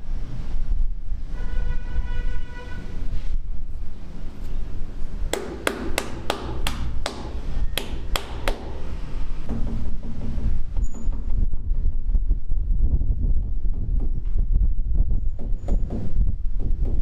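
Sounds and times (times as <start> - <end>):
hammer strikes ringing: 5.4 - 9.0.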